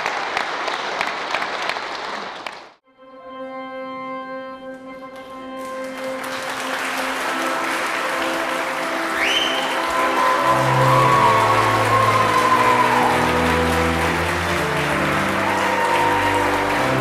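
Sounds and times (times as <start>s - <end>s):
congregation applauding: 0.0s - 2.8s, 5.6s - 17.0s.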